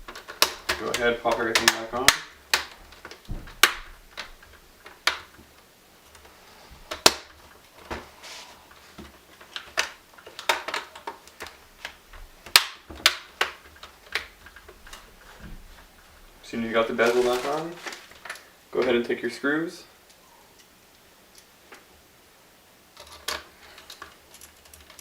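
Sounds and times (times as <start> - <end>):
plastic clips snapping into place: 0.1 - 5.5, 9.0 - 15.6.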